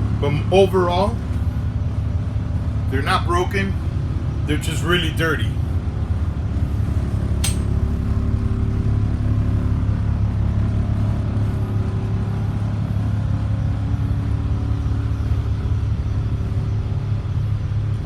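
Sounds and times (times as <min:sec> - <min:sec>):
bus diesel engine idling: 0:00.0 - 0:18.0
sharp click: 0:07.4 - 0:07.8.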